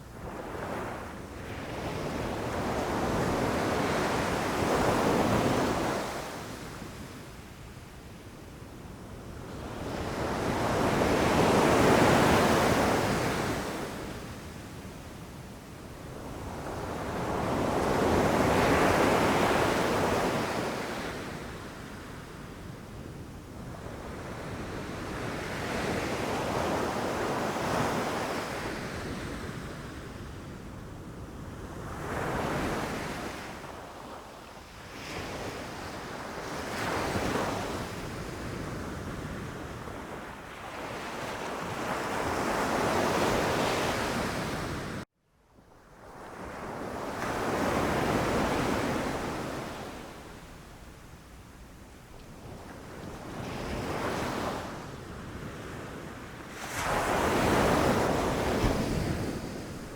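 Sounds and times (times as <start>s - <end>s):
ocean waves breaking on shore: 52.4s - 59.9s.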